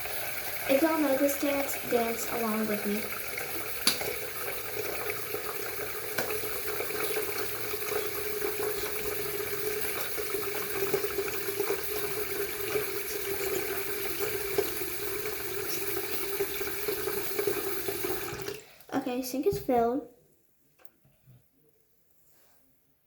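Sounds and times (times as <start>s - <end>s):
tap running into sink: 2.1s - 18.6s.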